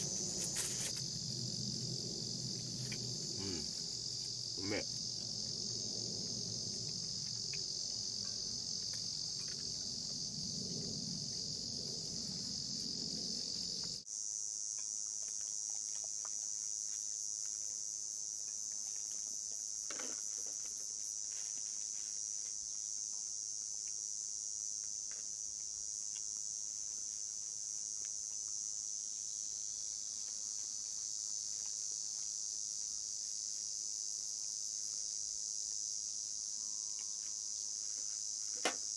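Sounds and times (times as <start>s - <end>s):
insects shrilling: 0.0s - 14.1s.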